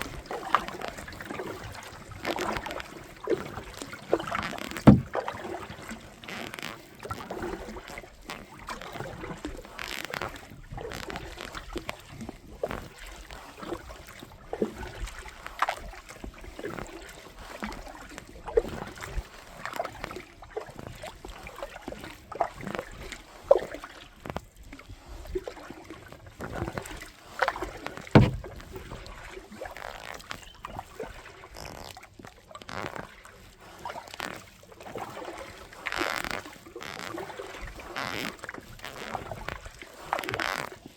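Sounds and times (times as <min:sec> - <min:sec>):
moving water wash: 0:00.0 - 0:07.0, 0:26.7 - 0:29.7
water splashing around a kayak: 0:00.0 - 0:40.9.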